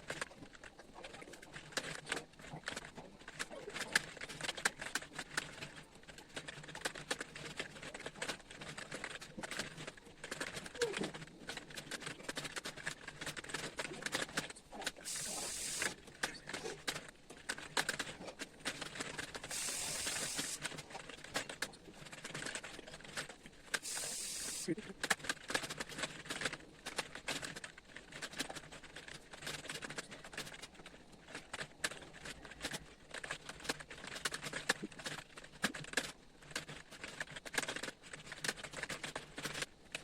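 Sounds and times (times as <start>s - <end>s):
computer keyboard typing: 6.4s - 24.7s
short hiss: 15.1s - 16.0s, 19.4s - 20.6s, 23.8s - 24.7s.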